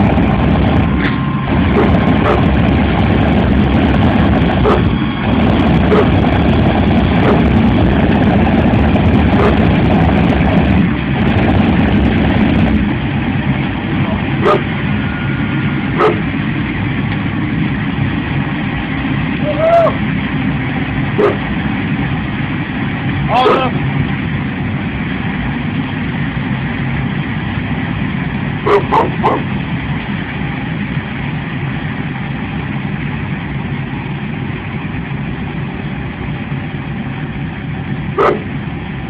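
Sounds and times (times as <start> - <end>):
jet engine roaring: 0.0 - 39.0
dog barking: 4.6 - 4.9, 14.4 - 14.7, 16.0 - 16.3, 21.2 - 21.4, 28.7 - 29.5, 38.2 - 38.5.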